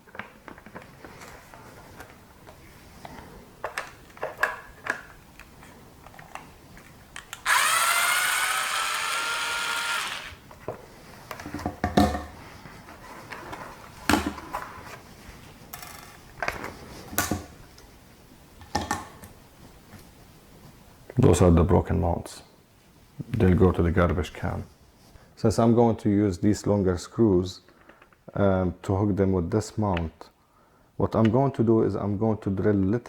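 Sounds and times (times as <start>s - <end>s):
power drill running: 7.4s - 10.4s.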